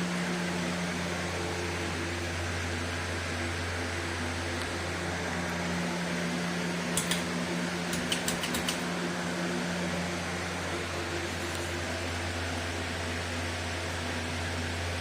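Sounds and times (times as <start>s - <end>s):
ceiling fan humming: 0.0s - 15.0s
sharp clicks: 6.9s - 8.9s.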